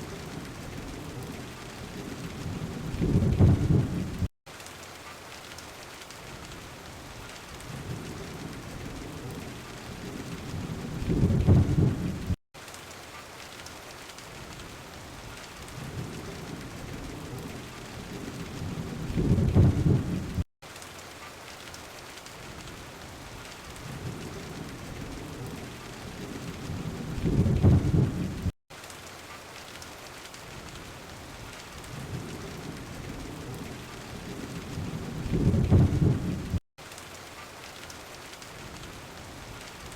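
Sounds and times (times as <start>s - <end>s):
thunder rumbling: 0.0s - 4.3s, 7.6s - 12.4s, 15.2s - 20.4s, 23.8s - 28.5s, 31.4s - 36.6s
steady rain: 0.0s - 39.9s.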